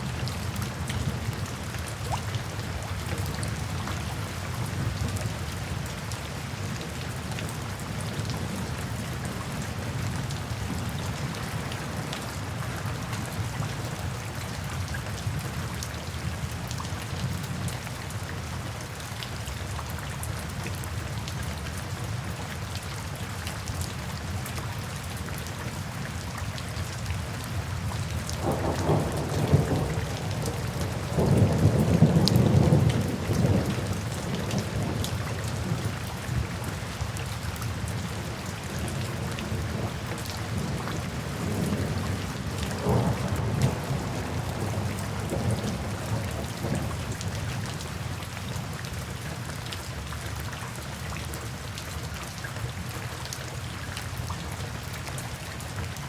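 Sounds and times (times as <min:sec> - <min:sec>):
steady rain falling: 0:00.0 - 0:56.0
thunder rumbling: 0:28.4 - 0:35.8, 0:40.5 - 0:47.2.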